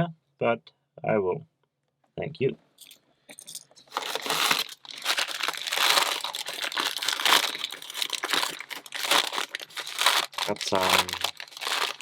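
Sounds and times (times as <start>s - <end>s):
packaging crinkling and rustling: 3.8s - 12.0s.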